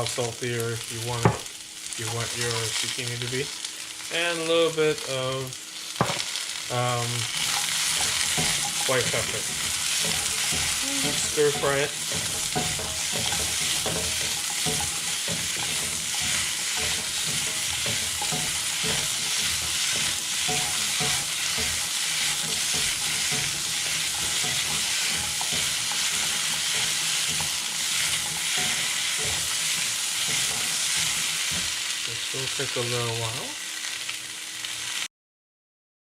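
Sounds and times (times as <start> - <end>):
vegetables sizzling in oil: 0.0 - 35.1
spatula scraping wok: 5.9 - 33.0.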